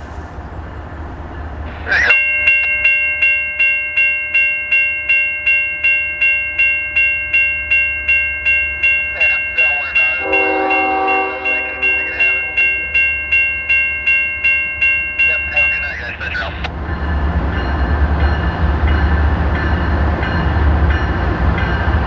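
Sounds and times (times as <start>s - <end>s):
crossing bell ringing: 0.0s - 22.0s
freight train rumble: 0.0s - 22.0s
locomotive horn: 9.2s - 13.2s.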